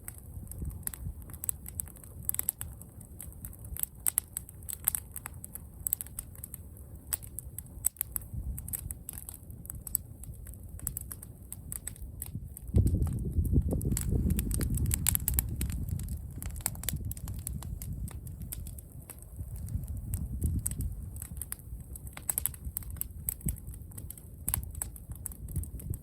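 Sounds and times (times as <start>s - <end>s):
low rumble: 9.7s - 26.0s.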